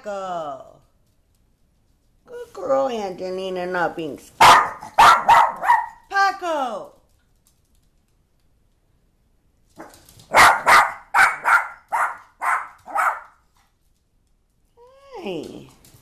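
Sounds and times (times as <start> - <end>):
dog barking: 4.4 - 6.0, 9.8 - 13.4.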